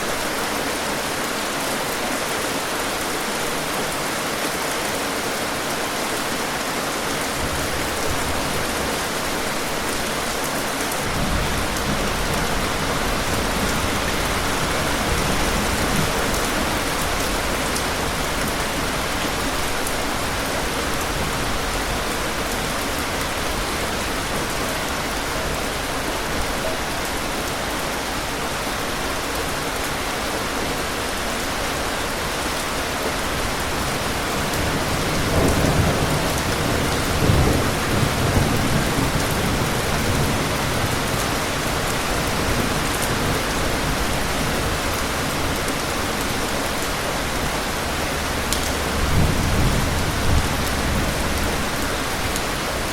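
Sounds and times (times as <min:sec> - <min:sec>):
rain hiss: 0:00.0 - 0:52.9
distant thunder rumble: 0:11.0 - 0:18.6, 0:48.2 - 0:52.4.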